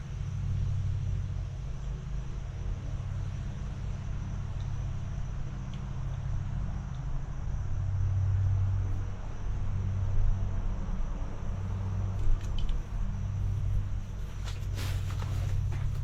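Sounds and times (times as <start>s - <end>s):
tractor engine running: 7.6s - 16.0s.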